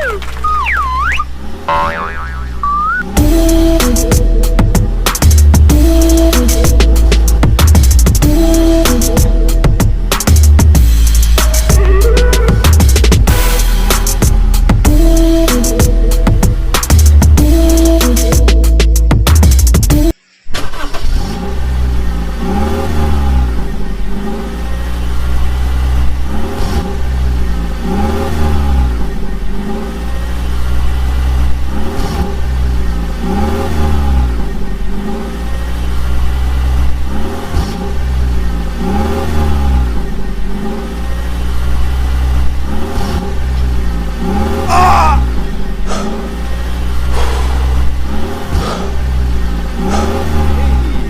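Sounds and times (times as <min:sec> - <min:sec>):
vehicle engine revving: 0:00.0 - 0:51.0.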